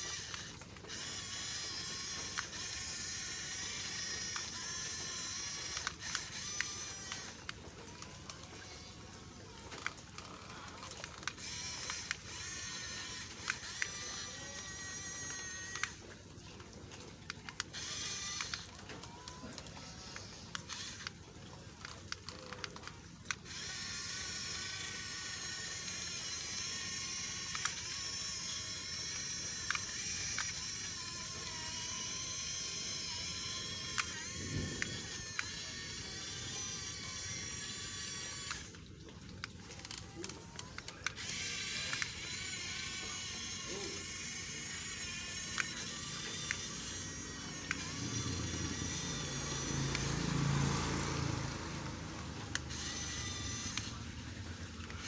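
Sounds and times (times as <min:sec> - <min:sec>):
toy electric motors whining: 0:00.0 - 0:55.0
scattered clicks: 0:17.2 - 0:38.8, 0:39.4 - 0:55.0.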